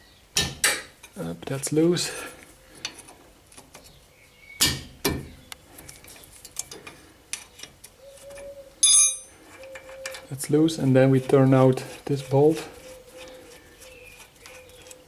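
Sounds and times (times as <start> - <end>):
ringing metal clink: 8.8 - 9.3.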